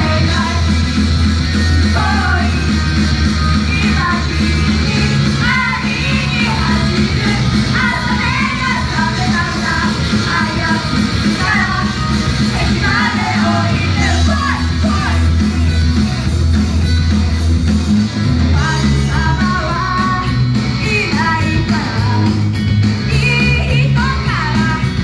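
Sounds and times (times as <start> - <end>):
group singing a rock song: 0.0 - 25.0
rock band with bass and guitar: 0.0 - 25.0.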